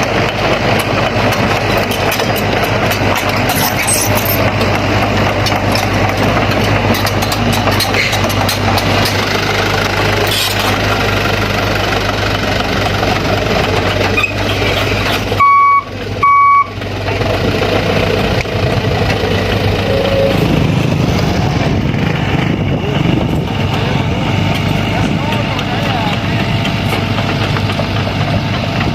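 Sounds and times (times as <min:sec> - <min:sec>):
excavator diesel engine running: 0:00.0 - 0:28.9
reversing alarm beeps: 0:15.4 - 0:16.8.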